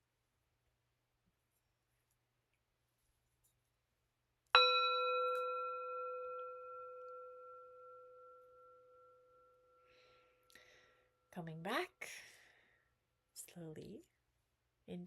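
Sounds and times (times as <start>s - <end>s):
meditation bell ringing: 4.6s - 10.3s.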